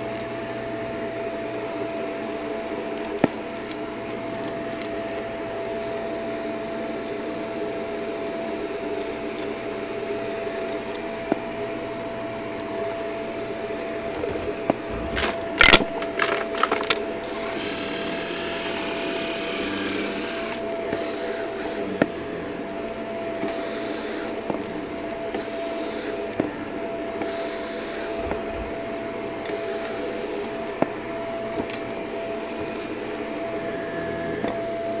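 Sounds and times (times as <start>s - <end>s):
vacuum cleaner whining: 0.0s - 35.0s
debris rattling in vacuum: 13.8s - 20.7s, 28.1s - 29.2s.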